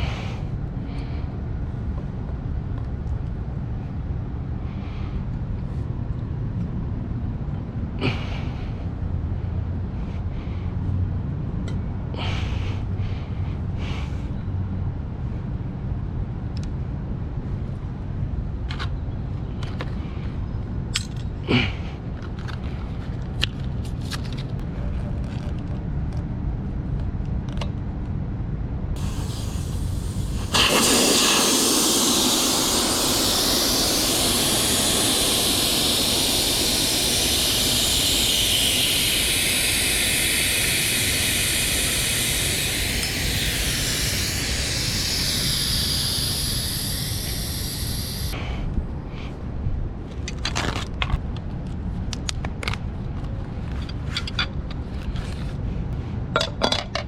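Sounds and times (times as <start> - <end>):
loud hiss of rushing air: 0.0 - 0.5, 29.0 - 49.3.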